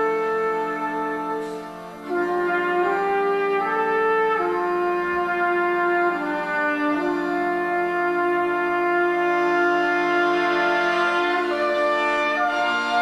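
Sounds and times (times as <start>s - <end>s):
brass ensemble playing chords: 0.0s - 13.0s.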